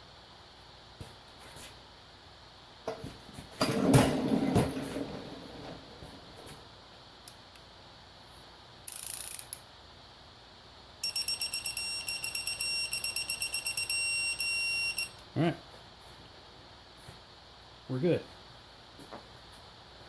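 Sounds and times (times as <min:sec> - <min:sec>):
rapid electronic beeping: 0:11.0 - 0:15.2.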